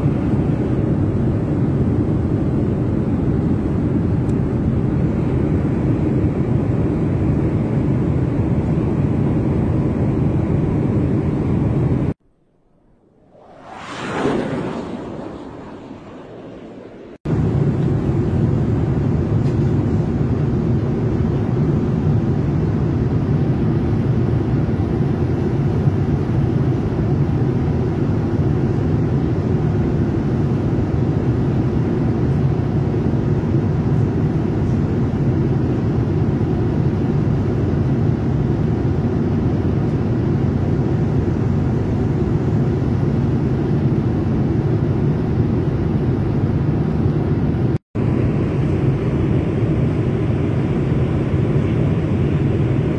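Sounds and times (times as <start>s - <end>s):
airliner cabin engine rumble: 0.0s - 52.9s.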